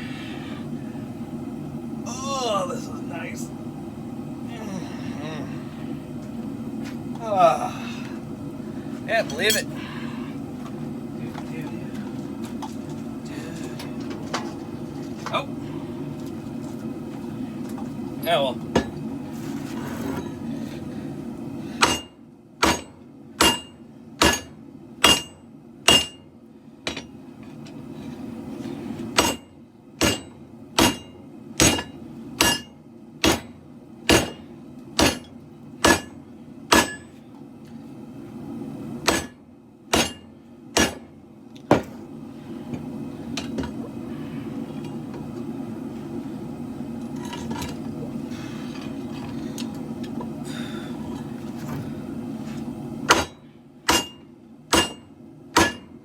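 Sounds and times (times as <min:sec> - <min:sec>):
forge burners roaring: 0:00.0 - 0:56.0
hammer striking steel on anvil: 0:09.4 - 0:09.7, 0:21.8 - 0:26.3, 0:29.2 - 0:34.4, 0:35.0 - 0:37.1, 0:39.0 - 0:41.1, 0:53.1 - 0:56.0.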